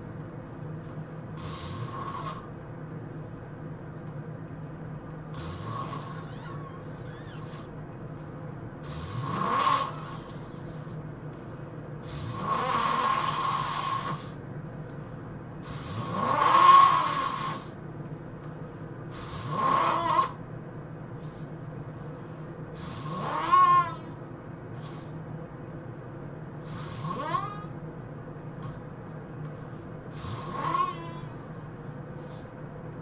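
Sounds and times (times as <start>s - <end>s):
steady low hum: 0.0s - 33.0s
person snoring loudly: 1.4s - 2.5s, 5.3s - 7.7s, 8.8s - 10.6s, 12.0s - 14.4s, 15.6s - 17.7s, 19.1s - 20.4s, 22.8s - 24.2s, 26.6s - 27.7s, 30.1s - 31.4s.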